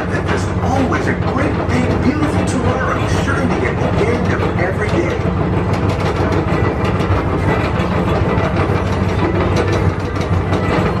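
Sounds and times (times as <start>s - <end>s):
electric train car humming: 0.0s - 11.0s.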